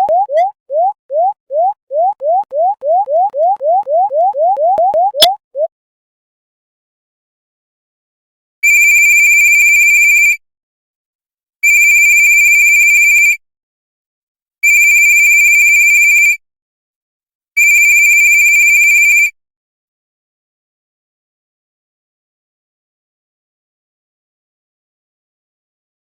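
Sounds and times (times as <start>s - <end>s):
electronic phone ringtone: 0.0s - 5.4s.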